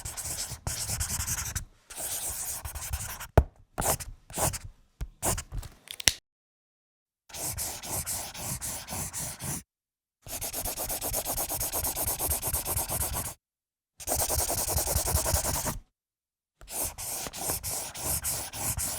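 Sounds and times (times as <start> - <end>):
pencil scratching on paper: 0.0 - 5.4, 7.4 - 9.6, 10.3 - 13.4, 14.0 - 15.8, 16.6 - 18.9.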